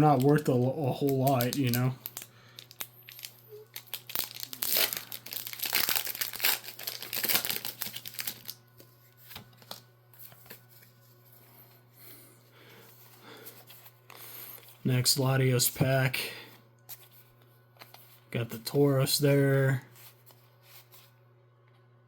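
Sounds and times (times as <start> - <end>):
foil wrapper crinkling and tearing: 0.0 - 8.6.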